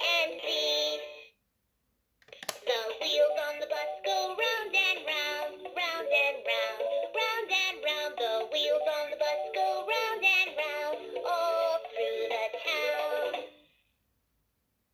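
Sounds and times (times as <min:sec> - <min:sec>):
synthetic singing voice: 0:00.0 - 0:01.3, 0:02.6 - 0:13.6
electronic children's tune: 0:03.1 - 0:13.5.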